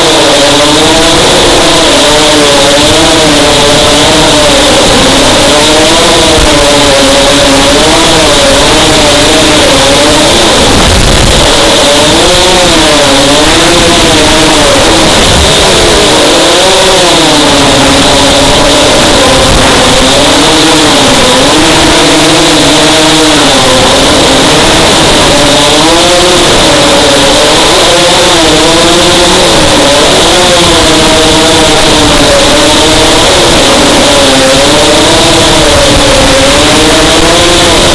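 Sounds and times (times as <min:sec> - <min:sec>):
drone motors whining: 0:00.0 - 0:37.9.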